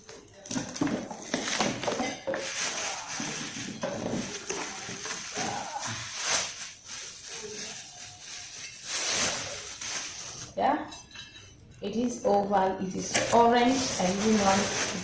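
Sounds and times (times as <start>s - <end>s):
packaging rustling: 0.7s - 10.6s, 13.2s - 15.0s.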